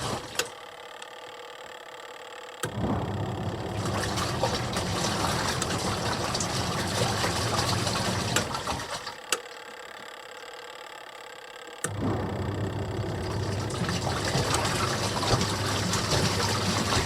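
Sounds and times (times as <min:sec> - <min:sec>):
washing machine motor humming: 0:00.0 - 0:17.0
washing machine click: 0:02.6 - 0:09.5, 0:11.8 - 0:17.0
water sloshing in drum: 0:02.8 - 0:09.2, 0:13.0 - 0:17.0.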